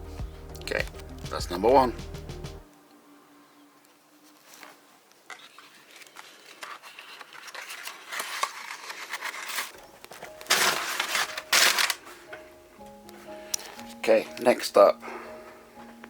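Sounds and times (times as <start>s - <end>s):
packaging rustling and crinkling: 4.2s - 12.6s.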